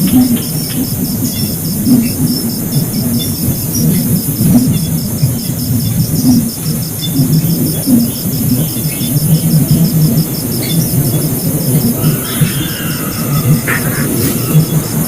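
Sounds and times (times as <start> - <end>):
insect chirping: 7.0 - 15.0
low rumbling noise: 11.6 - 15.0.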